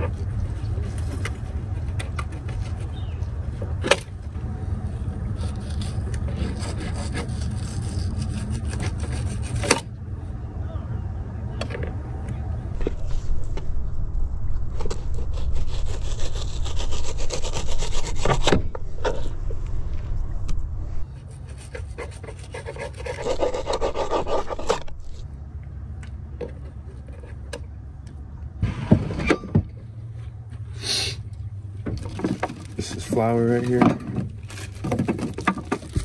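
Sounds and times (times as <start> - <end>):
low rumble: 0.0 - 22.4
knife sawing on cutting board: 5.5 - 9.8, 21.4 - 24.8.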